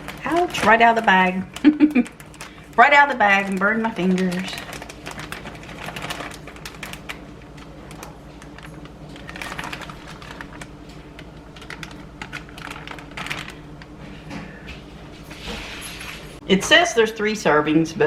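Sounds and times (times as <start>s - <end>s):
plastic bag crinkling with clicks: 0.0s - 14.2s.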